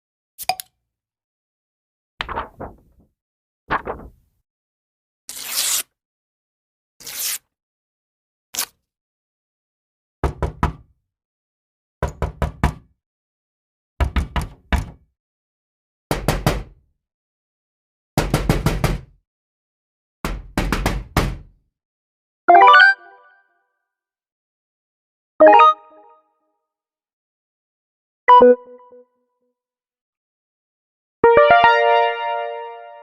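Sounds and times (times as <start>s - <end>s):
click: 0.4s - 0.7s.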